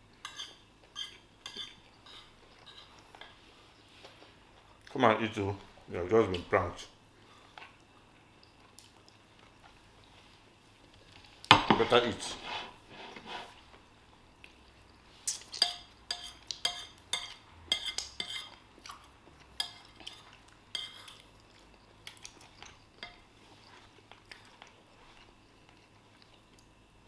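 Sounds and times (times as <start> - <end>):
cutlery clinking on plates: 0.2 - 3.4, 15.4 - 18.5.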